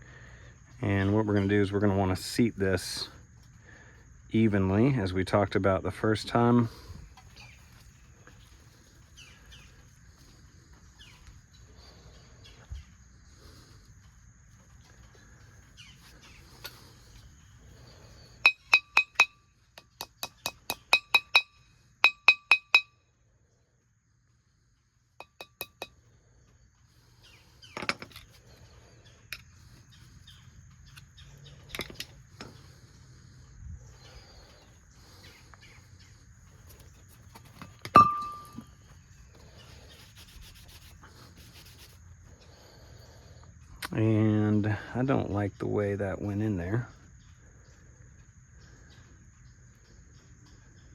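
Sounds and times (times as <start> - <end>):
hammer tapping metal: 18.5 - 22.9, 25.2 - 26.0, 37.9 - 38.6.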